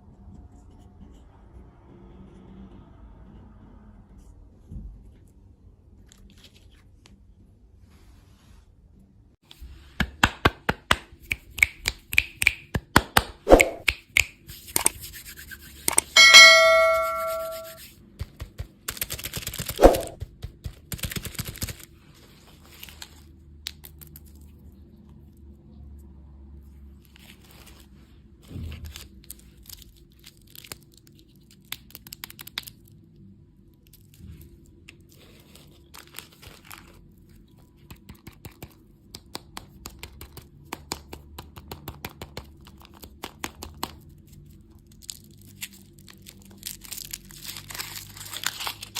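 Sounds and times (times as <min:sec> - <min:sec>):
single ringing ding: 0:16.2 - 0:17.8
wrapper tearing and crinkling: 0:28.8 - 0:32.9, 0:35.3 - 0:37.0, 0:44.0 - 0:48.9
packaging taps and clicks: 0:37.8 - 0:44.0.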